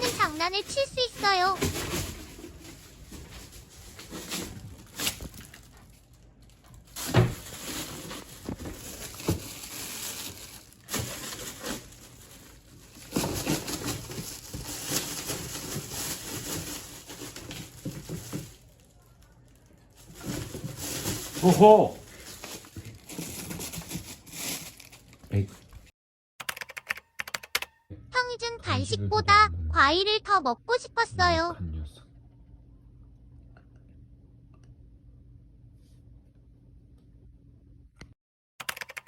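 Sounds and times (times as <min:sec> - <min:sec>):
rustling and crinkling of trash: 0:00.0 - 0:25.9.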